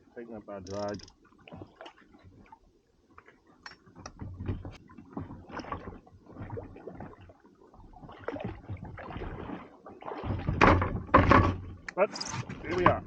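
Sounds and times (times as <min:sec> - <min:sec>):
fishing gear knocking and rustling: 0:00.6 - 0:01.2, 0:10.5 - 0:13.0.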